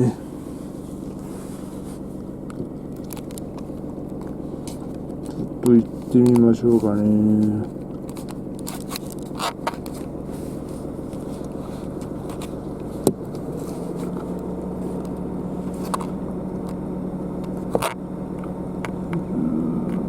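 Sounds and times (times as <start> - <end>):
engine idling: 0.0 - 20.0.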